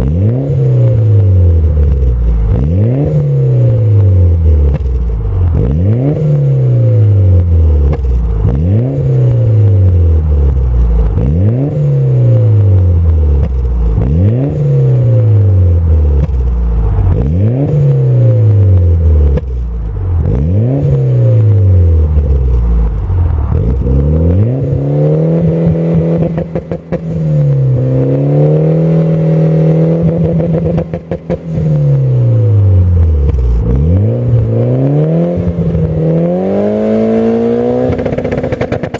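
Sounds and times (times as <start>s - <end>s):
car engine revving: 0.0s - 38.9s
exhaust crackling pops: 4.0s - 6.0s, 7.3s - 8.7s, 9.3s - 11.5s, 12.6s - 14.3s, 15.8s - 17.8s, 32.6s - 34.7s, 35.3s - 36.5s, 37.8s - 38.9s.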